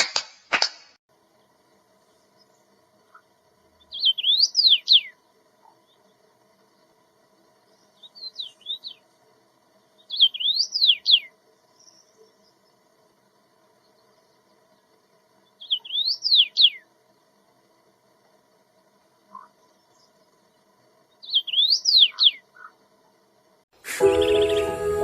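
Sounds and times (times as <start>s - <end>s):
faint steady hum: 1.1s - 25.0s
songbird whistling song: 3.8s - 5.2s, 7.6s - 9.0s, 10.0s - 12.6s, 15.4s - 16.9s, 21.1s - 22.8s, 23.8s - 25.0s.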